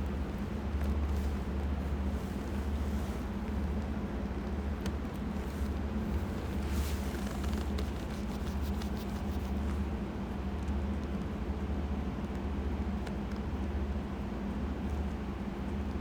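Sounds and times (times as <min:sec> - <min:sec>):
low machine hum: 0:00.0 - 0:11.1.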